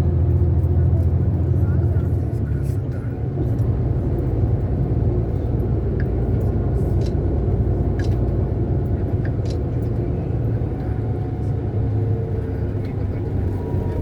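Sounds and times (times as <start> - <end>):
bus engine and road rumble: 0.0 - 14.0.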